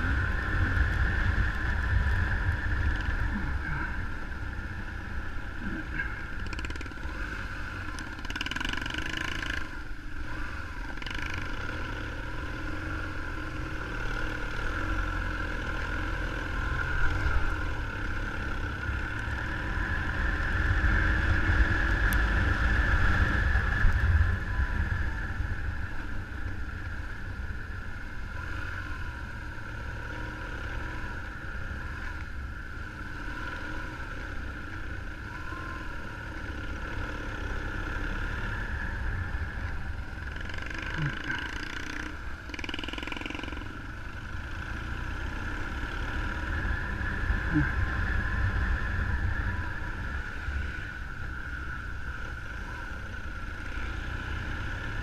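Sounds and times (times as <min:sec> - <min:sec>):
wind rumble on microphone: 0:00.0 - 0:08.2, 0:14.7 - 0:30.0, 0:43.9 - 0:55.0
motorcycle engine running: 0:00.0 - 0:55.0.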